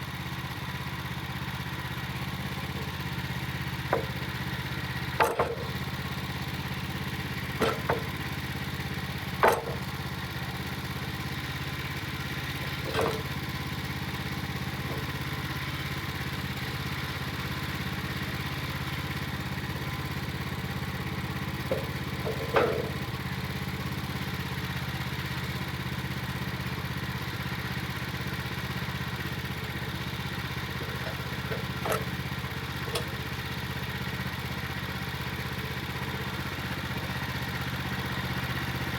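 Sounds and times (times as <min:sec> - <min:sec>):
gasoline engine running steadily: 0:00.0 - 0:38.9
sharp knocks of boards: 0:03.9 - 0:04.2, 0:05.2 - 0:05.8, 0:07.6 - 0:08.3, 0:09.4 - 0:10.0, 0:12.8 - 0:13.4, 0:21.7 - 0:23.1.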